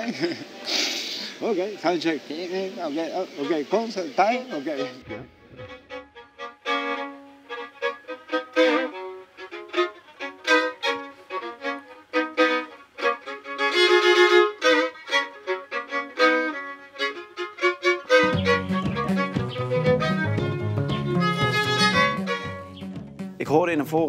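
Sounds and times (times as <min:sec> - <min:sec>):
solo violin melody: 0:00.0 - 0:23.2
deeper accompanying sounds: 0:01.4 - 0:07.8.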